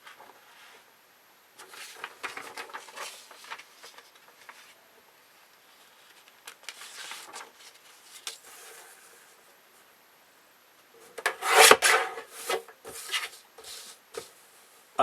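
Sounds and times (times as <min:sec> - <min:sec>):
paper being cut: 0:11.4 - 0:12.2.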